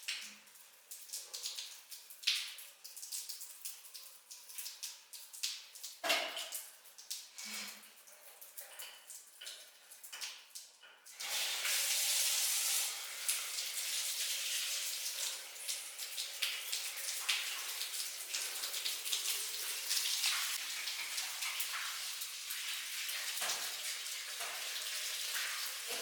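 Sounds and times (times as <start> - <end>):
water dripping: 0.0 - 26.0
water running and splashing: 11.1 - 26.0.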